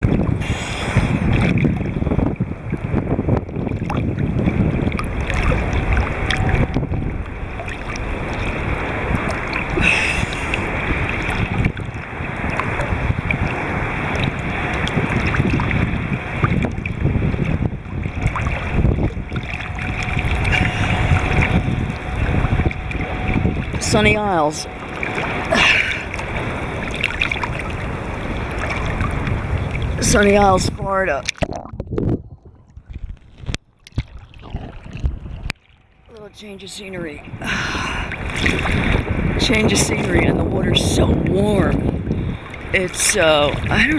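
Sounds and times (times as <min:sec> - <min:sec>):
sea water sloshing and splashing: 0:00.0 - 0:43.9
wind buffeting microphone: 0:00.0 - 0:43.9
faint steady hum: 0:04.1 - 0:30.6.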